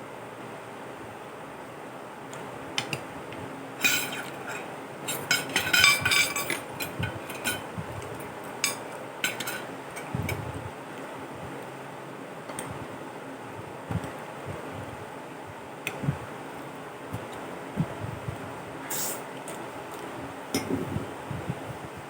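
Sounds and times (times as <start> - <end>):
cutlery clinking on a plate: 3.8 - 7.7, 8.6 - 10.1.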